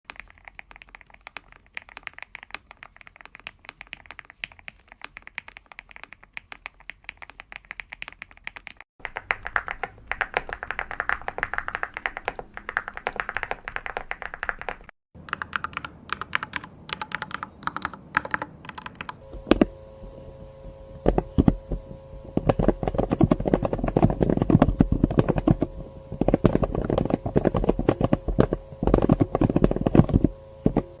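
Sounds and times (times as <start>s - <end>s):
fast typing on keyboards: 0.1s - 19.7s, 22.3s - 31.0s
steady hum: 9.0s - 14.9s, 19.2s - 31.0s.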